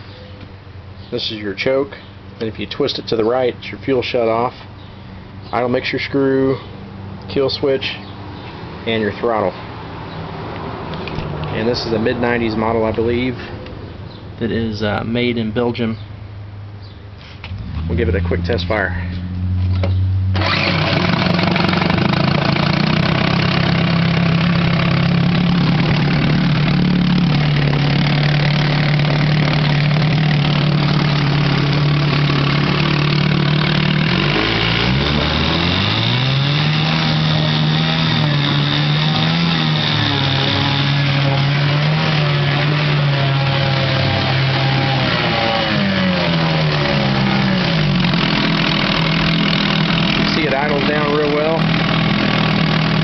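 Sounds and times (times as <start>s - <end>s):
outboard motor running: 19.8s - 53.0s.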